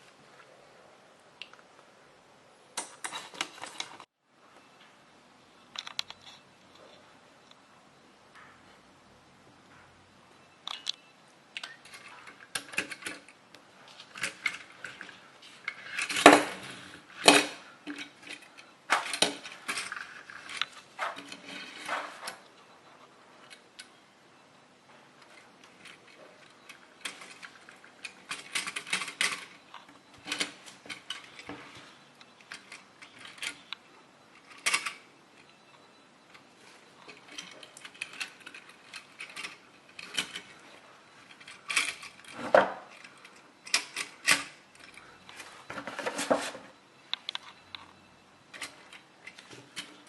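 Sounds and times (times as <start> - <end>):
toy cars clicking and rattling: 11.6 - 22.4, 25.2 - 35.1, 36.3 - 45.4.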